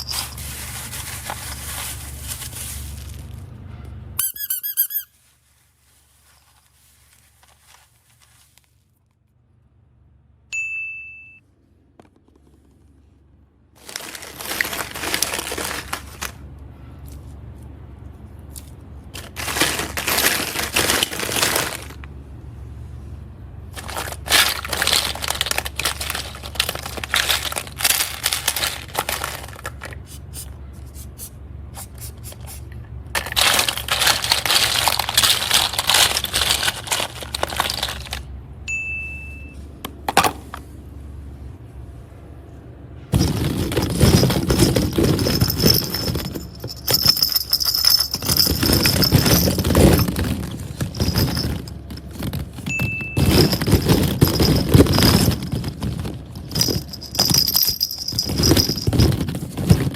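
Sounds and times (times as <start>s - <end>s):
slime crinkling and scraping: 0.0s - 3.5s, 5.2s - 8.9s
short high chime: 10.6s - 11.4s, 38.7s - 39.6s.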